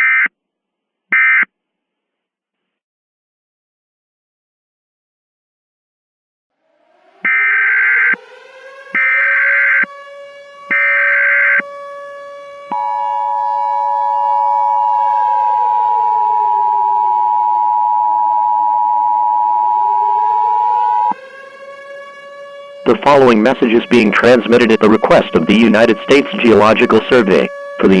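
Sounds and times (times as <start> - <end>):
siren wail: 6.5 - 28.0
two-tone attention signal: 15.6 - 21.1.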